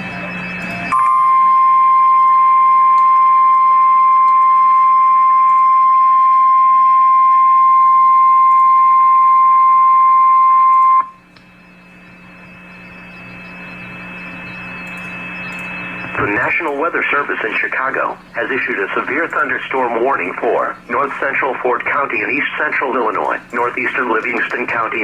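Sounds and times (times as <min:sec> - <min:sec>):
faint low hum: 0:00.0 - 0:25.0
long high alarm beep: 0:00.0 - 0:25.0
radio hiss: 0:11.2 - 0:25.0.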